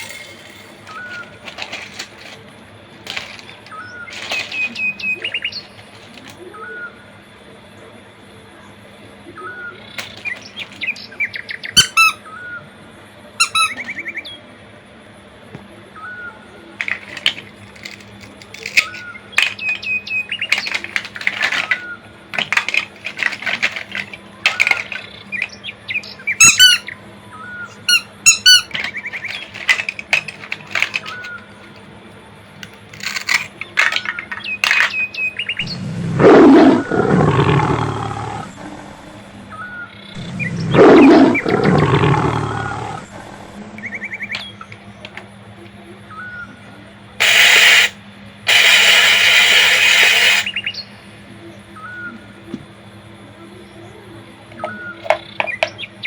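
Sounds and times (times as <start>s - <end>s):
bird-like chirps and squeaks: 10.3s - 12.2s, 13.4s - 14.2s, 26.3s - 26.9s, 27.6s - 29.4s
loud animal roar: 35.6s - 39.4s, 40.2s - 43.8s.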